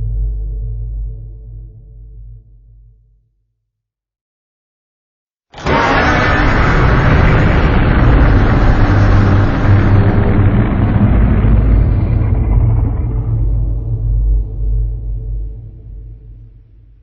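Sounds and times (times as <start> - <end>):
deep rumbling monster roar: 5.6 - 16.8.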